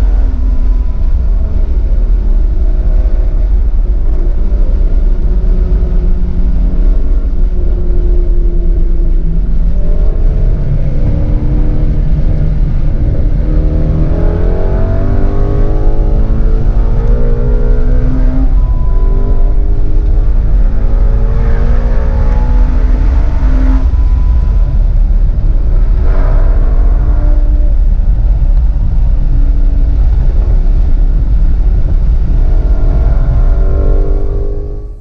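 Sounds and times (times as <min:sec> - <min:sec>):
car engine accelerating: 0:00.0 - 0:35.0.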